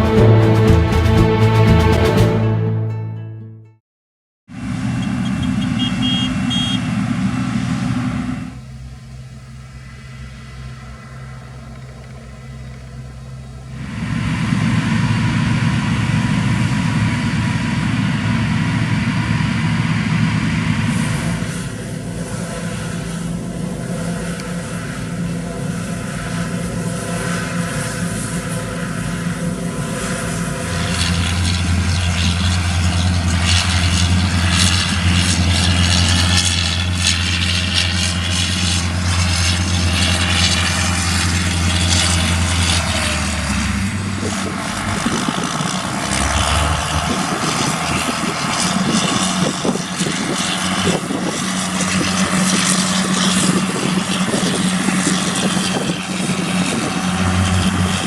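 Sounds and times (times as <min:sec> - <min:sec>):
diesel engine drone: 0:00.0 - 0:02.8, 0:04.5 - 0:58.0
deeper drone: 0:00.0 - 0:03.0, 0:04.5 - 0:58.0.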